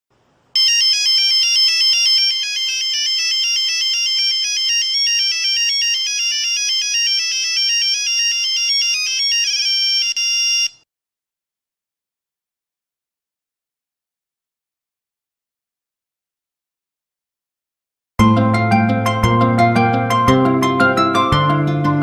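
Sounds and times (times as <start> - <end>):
mobile phone ringtone: 0.6 - 10.8.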